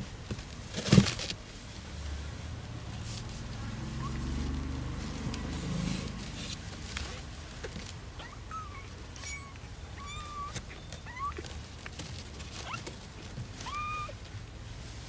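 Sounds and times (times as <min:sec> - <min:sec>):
kittens mewing: 0:03.9 - 0:04.4, 0:08.1 - 0:12.0, 0:13.5 - 0:14.2.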